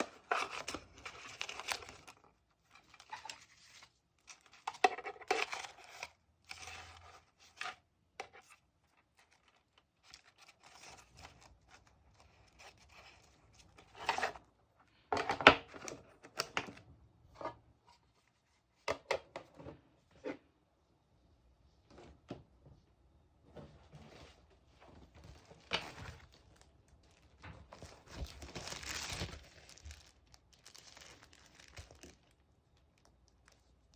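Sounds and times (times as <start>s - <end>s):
paper rustling and tearing: 25.2s - 32.4s.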